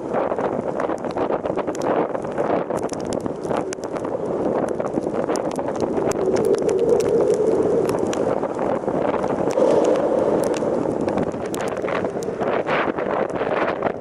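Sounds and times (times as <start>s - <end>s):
rain ticking on camera: 0.0s - 14.0s
strong wind buffeting microphone: 0.0s - 14.0s.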